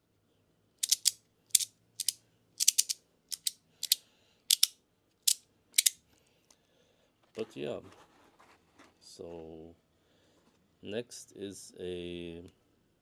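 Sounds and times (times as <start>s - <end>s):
magnetic slider pieces clicking: 0.8s - 4.7s, 5.3s - 6.0s.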